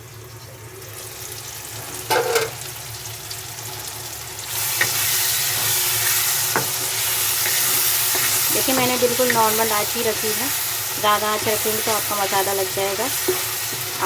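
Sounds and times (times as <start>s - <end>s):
food sizzling in oil: 0.0s - 14.0s
metal clank: 2.1s - 2.6s.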